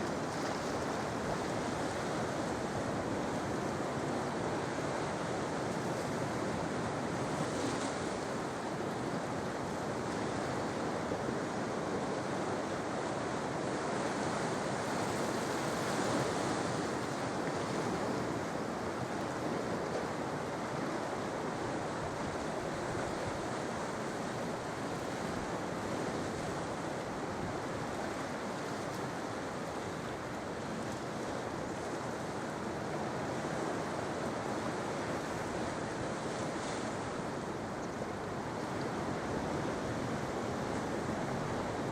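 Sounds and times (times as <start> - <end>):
sea waves breaking on shore: 0.0 - 41.9.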